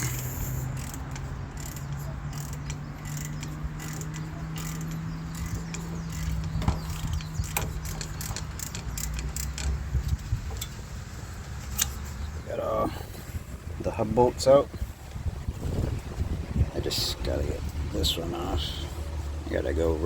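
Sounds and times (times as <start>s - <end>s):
socket ratchet clicking: 0.0s - 10.8s.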